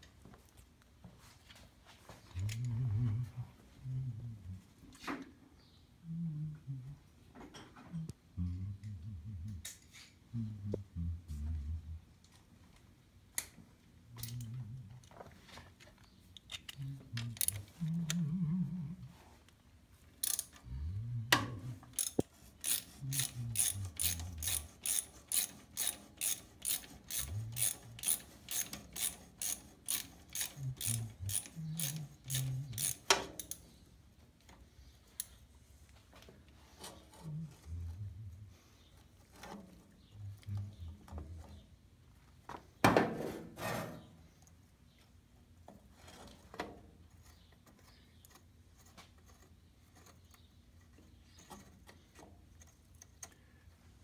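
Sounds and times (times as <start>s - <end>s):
socket ratchet clicking: 21.9s - 33.6s.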